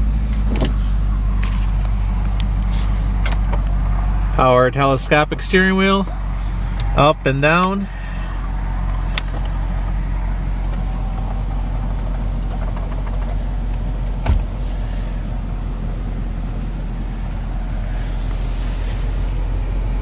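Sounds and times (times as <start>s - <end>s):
car engine idling: 0.0s - 20.0s
short thump: 0.4s - 0.9s, 14.2s - 14.7s.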